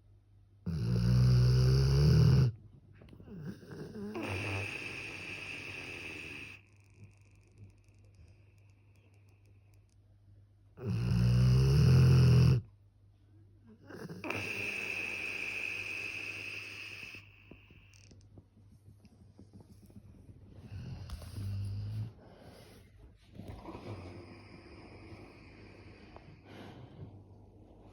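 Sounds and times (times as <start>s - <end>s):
puppy snoring: 0.6s - 2.6s, 3.2s - 8.4s, 10.8s - 12.7s, 13.8s - 18.2s, 19.0s - 26.8s.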